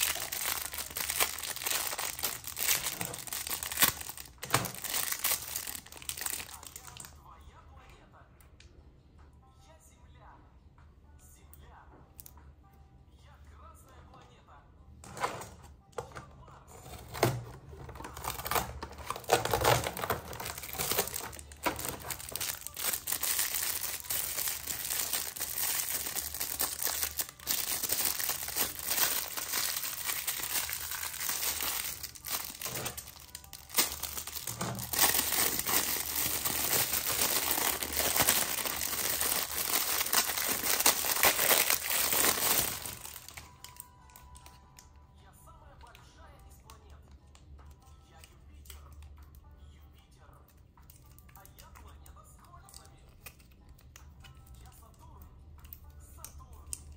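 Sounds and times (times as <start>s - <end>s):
packaging crinkling: 0.0s - 7.1s, 16.8s - 44.5s.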